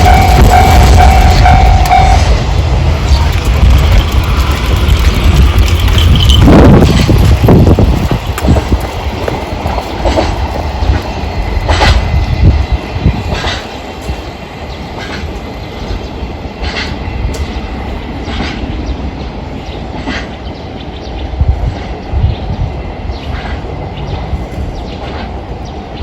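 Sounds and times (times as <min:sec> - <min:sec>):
train wheels clacking on rail joint: 0:00.0 - 0:18.7, 0:19.9 - 0:20.5.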